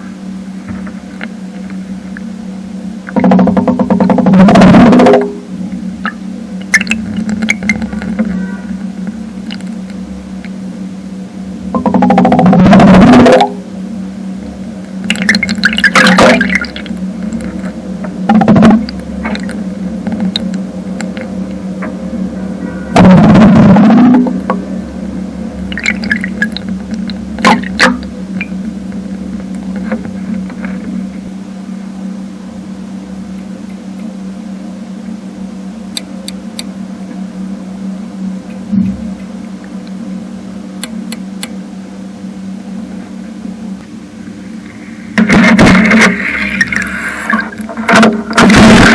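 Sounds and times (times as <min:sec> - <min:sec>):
low underwater hum: 0:00.0 - 0:48.9
underwater crackling and clicking: 0:06.0 - 0:08.3, 0:09.0 - 0:10.6, 0:14.8 - 0:21.6, 0:25.6 - 0:30.8.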